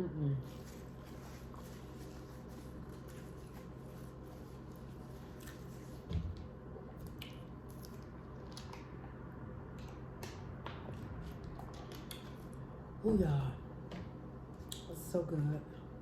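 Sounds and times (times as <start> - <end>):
steady low hum: 0.0 - 16.0
person chewing food: 0.9 - 6.1, 6.7 - 12.7.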